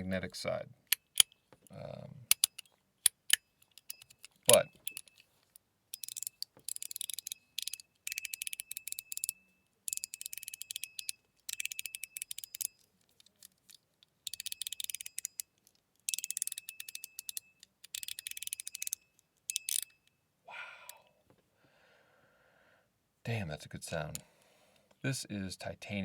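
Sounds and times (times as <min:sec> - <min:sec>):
fidget slider clicks: 0:02.3 - 0:05.2, 0:06.0 - 0:13.6, 0:14.3 - 0:15.5, 0:16.1 - 0:19.9.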